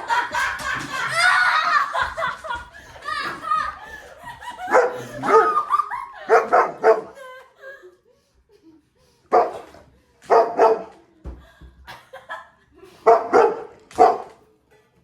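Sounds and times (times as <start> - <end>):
dog barking: 4.7 - 5.7, 6.3 - 7.2, 9.3 - 11.0, 13.0 - 14.4.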